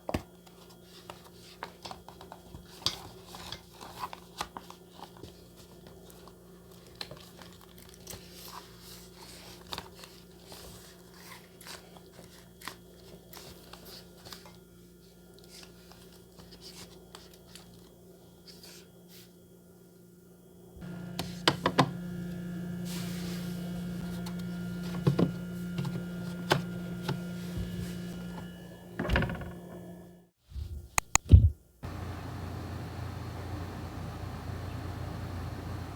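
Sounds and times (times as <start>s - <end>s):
steady low hum: 20.6s - 35.9s
louder steady hum: 20.8s - 30.3s, 31.8s - 35.9s.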